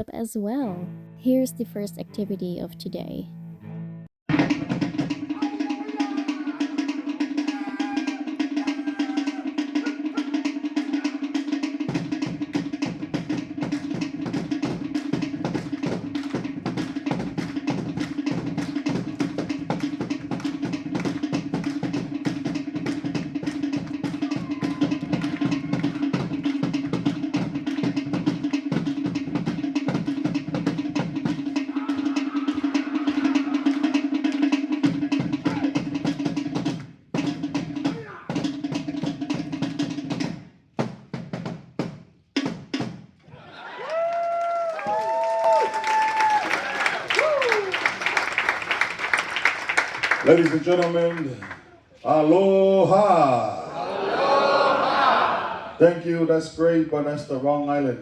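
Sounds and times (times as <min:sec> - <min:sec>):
fast dense drumming: 0:04.3 - 0:43.1.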